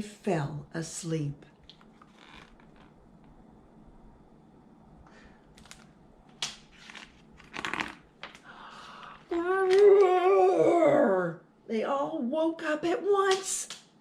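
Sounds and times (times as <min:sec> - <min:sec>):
book page turning clicks: 0:05.5 - 0:08.4
paper rustling: 0:05.5 - 0:08.4.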